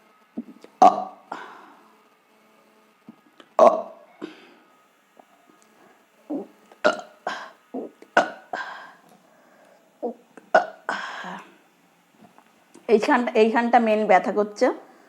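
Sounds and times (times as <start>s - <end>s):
woman belching: 0.8s - 1.2s, 3.6s - 4.0s, 6.3s - 8.6s, 10.0s - 11.0s.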